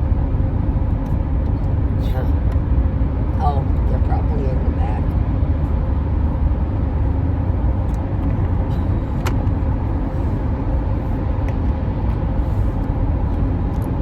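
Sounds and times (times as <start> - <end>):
car road and engine rumble: 0.0 - 14.0.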